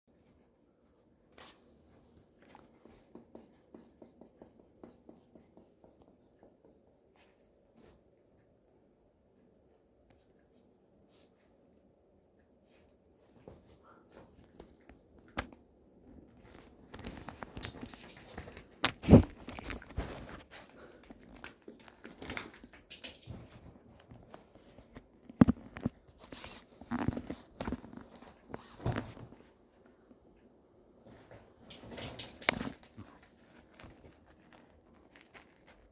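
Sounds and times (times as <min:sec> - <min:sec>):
puppy rustling and scratching: 0:12.6 - 0:30.0, 0:31.0 - 0:35.9.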